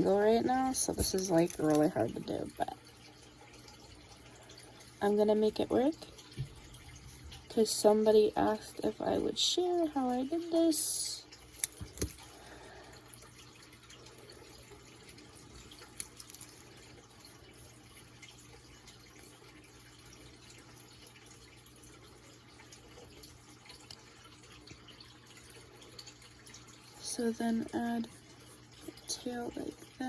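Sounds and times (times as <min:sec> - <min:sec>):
pencil scratching on paper: 0:28.0 - 0:30.0.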